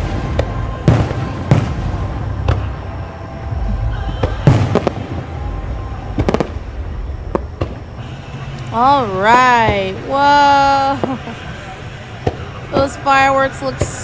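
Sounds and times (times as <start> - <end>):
fireworks bursting: 0.0 - 14.0
fireworks popping: 0.0 - 14.0.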